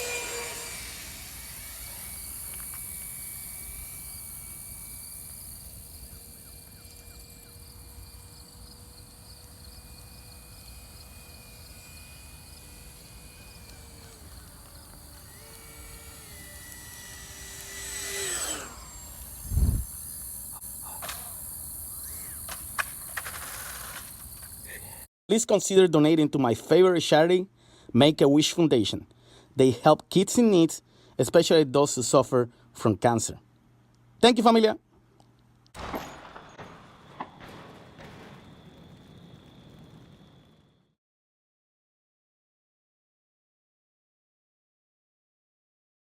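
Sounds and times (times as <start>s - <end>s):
model jet fan whining: 0.0s - 25.0s
insects chirring: 0.3s - 25.0s, 36.0s - 40.9s.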